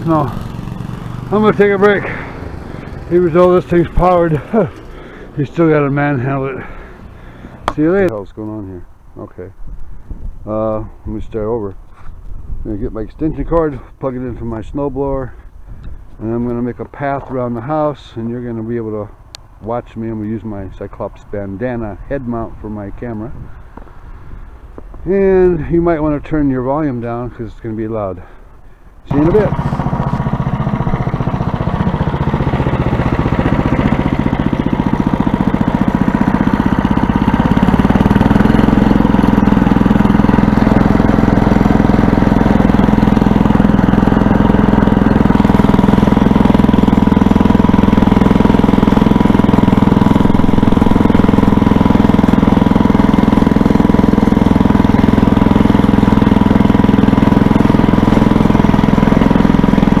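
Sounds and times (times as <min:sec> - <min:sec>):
snowblower engine running: 0:00.0 - 0:08.1, 0:29.0 - 1:00.0.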